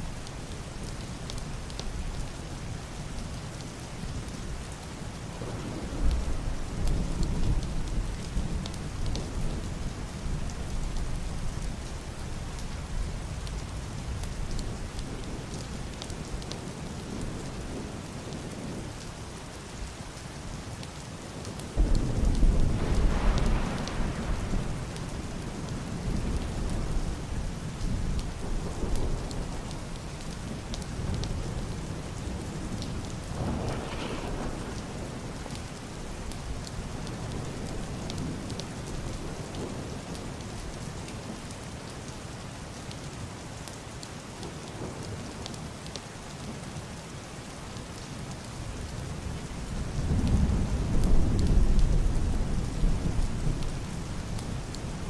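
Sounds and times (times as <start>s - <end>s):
heavy rain on roof and window: 0.0s - 55.0s
single raindrops ticking: 20.8s - 26.8s
distant rolling thunder: 21.8s - 40.4s.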